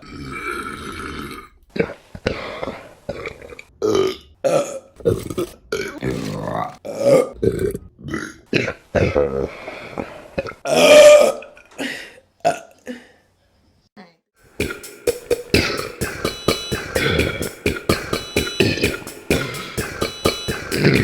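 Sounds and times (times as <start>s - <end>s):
music with steady beat: 14.5s - 21.0s.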